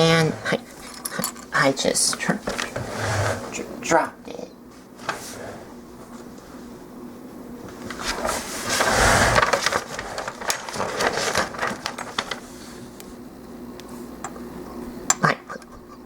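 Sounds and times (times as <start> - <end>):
plastic parts rustling: 7.7 - 12.6.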